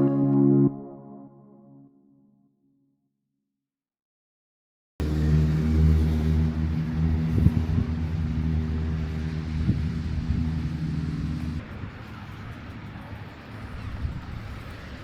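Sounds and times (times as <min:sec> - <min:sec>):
engine running with knocks: 0:05.0 - 0:15.0.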